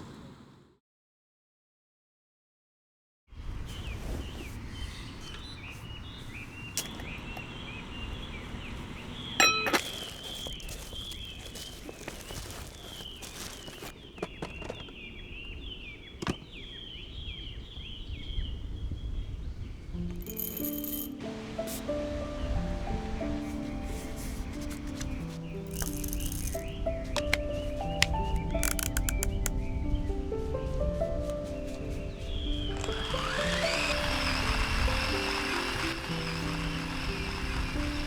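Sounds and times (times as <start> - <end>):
small birds chirping: 3.4 - 38.0
ringing clink: 9.4 - 9.9, 20.2 - 21.2
low wind rumble: 14.9 - 20.3, 21.2 - 38.0
music: 20.0 - 38.0.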